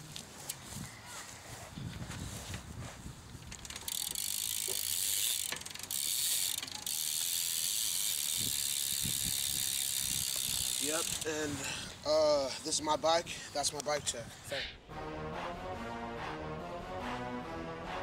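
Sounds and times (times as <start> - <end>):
bicycle hub freewheel ratchet buzzing: 3.4 - 11.7.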